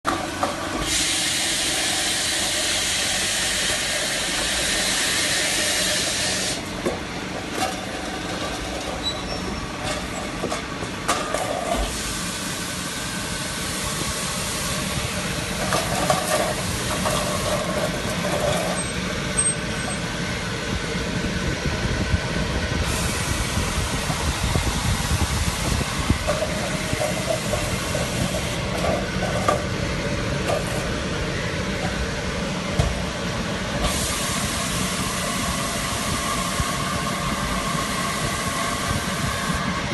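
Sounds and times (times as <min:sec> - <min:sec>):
spray hiss: 0:00.8 - 0:06.6, 0:22.9 - 0:24.1, 0:33.8 - 0:39.7
machine rumble: 0:06.6 - 0:39.9.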